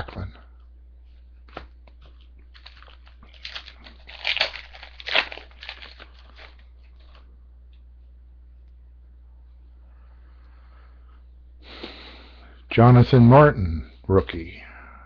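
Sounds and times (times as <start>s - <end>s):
foil wrapper crinkling and tearing: 1.5s - 7.3s.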